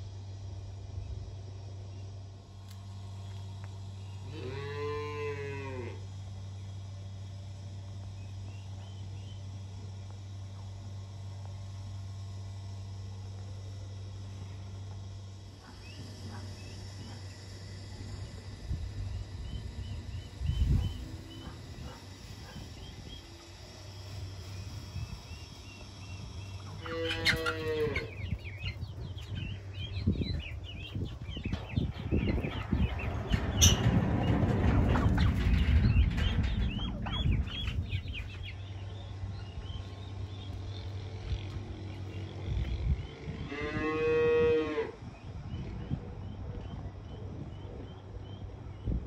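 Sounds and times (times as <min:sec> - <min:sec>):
steady low hum: 0:00.0 - 0:49.0
cow mooing: 0:04.3 - 0:06.0, 0:26.7 - 0:28.2, 0:43.4 - 0:45.0
high chirps of birds: 0:18.5 - 0:34.4
rustling and knocks: 0:31.5 - 0:38.4.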